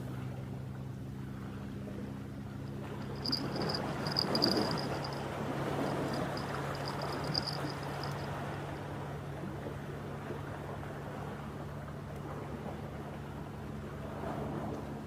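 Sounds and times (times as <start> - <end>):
boat engine droning: 0.0 - 15.0
insect chirping: 3.0 - 8.3.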